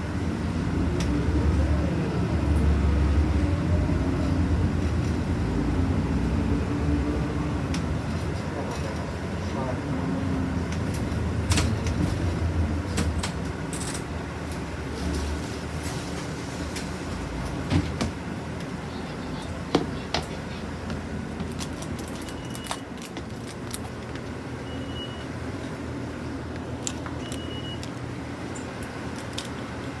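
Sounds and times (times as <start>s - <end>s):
bus engine drone: 0.0s - 30.0s
road noise: 0.0s - 30.0s
interior rattles and clicks: 10.6s - 15.3s.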